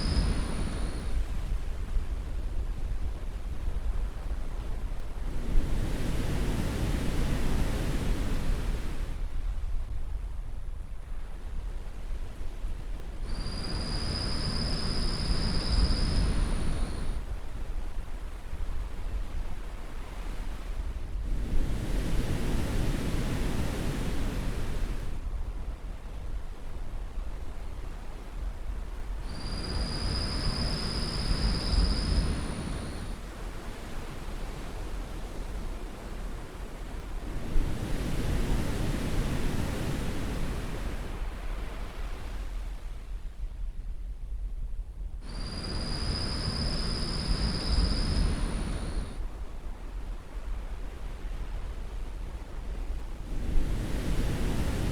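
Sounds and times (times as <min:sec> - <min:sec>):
wave breaking and washing ashore: 0:00.0 - 0:01.4, 0:28.8 - 0:43.4, 0:45.2 - 0:54.9
low rumble of waves: 0:00.0 - 0:54.9
surf wave washing in: 0:45.2 - 0:50.5.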